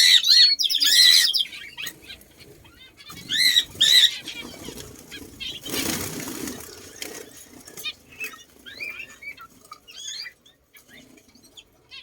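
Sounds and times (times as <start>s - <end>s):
birds squawking: 0.0s - 12.0s
soft bird chatter: 0.0s - 12.0s.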